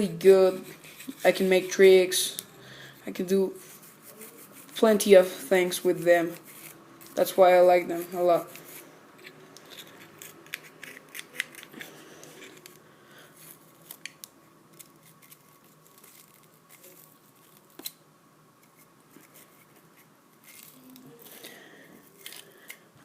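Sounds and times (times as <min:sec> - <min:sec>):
faint scratching: 0:03.0 - 0:14.0.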